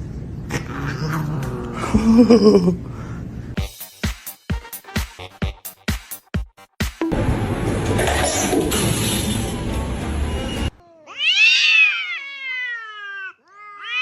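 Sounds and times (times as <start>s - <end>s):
loud dense noise: 7.1s - 10.8s
cat meowing: 10.8s - 14.0s.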